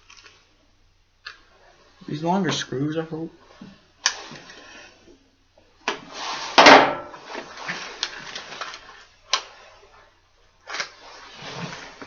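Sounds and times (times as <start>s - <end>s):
scraping and rustling: 6.0s - 12.0s
hardware parts knocking: 6.6s - 7.2s.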